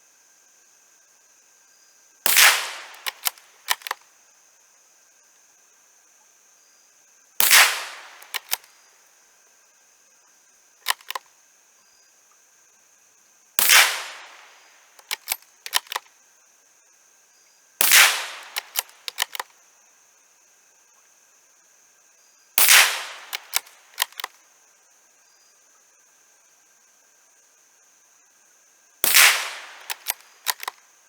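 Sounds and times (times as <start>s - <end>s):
metallic clicks of rifle bolt: 2.3s - 4.0s, 7.4s - 8.7s, 10.8s - 11.3s, 13.6s - 16.1s, 17.8s - 19.5s, 22.6s - 24.4s, 29.0s - 30.8s
rifle shots: 2.3s - 4.0s, 7.4s - 8.7s, 13.6s - 16.0s, 17.8s - 19.4s, 22.6s - 24.3s, 29.0s - 30.8s.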